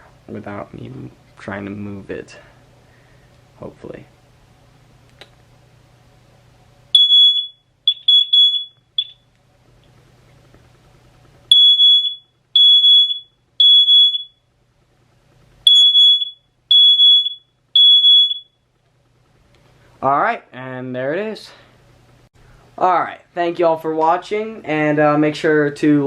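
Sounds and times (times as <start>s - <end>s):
fire alarm horn beeping: 6.9s - 9.2s, 11.5s - 14.4s, 15.6s - 18.6s.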